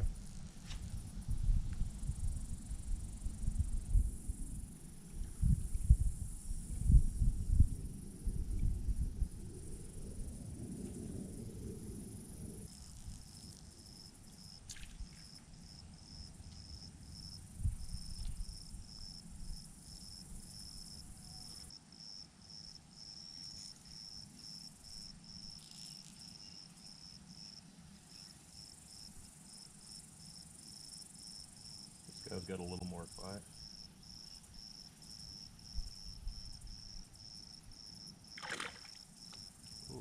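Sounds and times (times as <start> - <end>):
insect chirping: 0.0 - 40.0
steady high hiss: 17.0 - 38.2.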